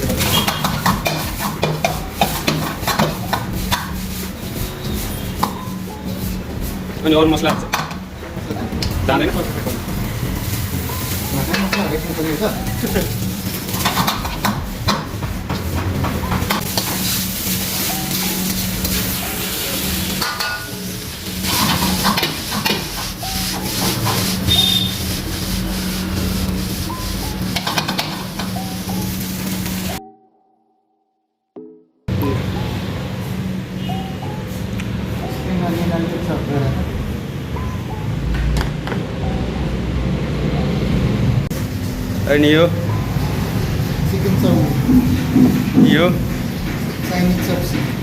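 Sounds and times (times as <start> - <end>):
kitchen utensils knocking and scraping: 0.0 - 4.0, 11.4 - 17.0, 21.5 - 24.9, 27.4 - 28.6, 44.7 - 48.0
food sizzling in a hot pan: 0.0 - 6.3, 9.1 - 15.0, 16.5 - 30.0
metal spatula scraping a pan: 0.0 - 6.3, 16.5 - 29.0.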